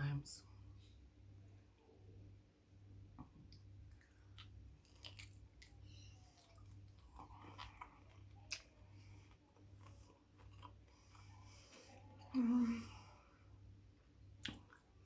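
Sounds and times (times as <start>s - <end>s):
chewing and mouth sounds: 3.5s - 12.4s, 14.3s - 15.0s.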